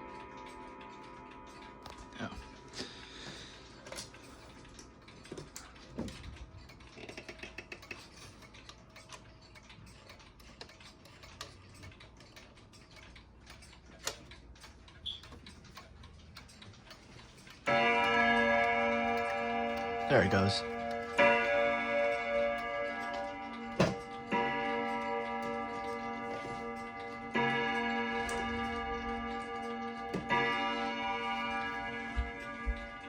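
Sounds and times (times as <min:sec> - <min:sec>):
clock chime ringing: 0:00.0 - 0:04.4, 0:17.6 - 0:33.0
wall clock ticking: 0:00.0 - 0:33.0.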